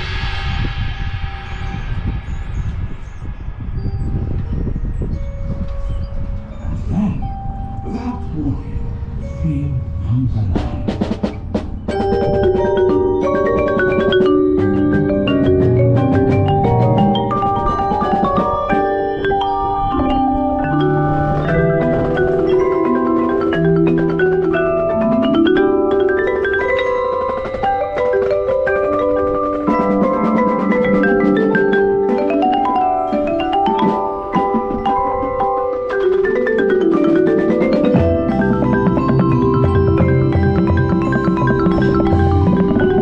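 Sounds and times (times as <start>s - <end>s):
marimba-like mallet percussion music: 3.8s - 43.0s
bass line: 6.3s - 22.7s.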